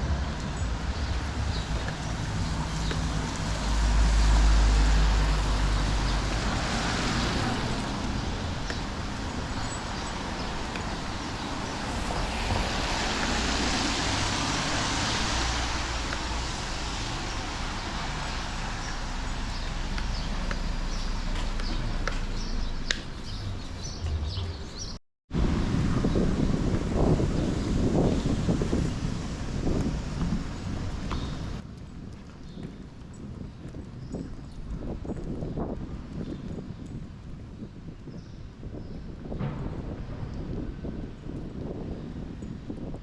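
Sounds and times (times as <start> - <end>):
heavy low rumble: 0.0 - 31.6
road traffic passing: 0.0 - 36.2
wind buffeting microphone: 0.0 - 43.0.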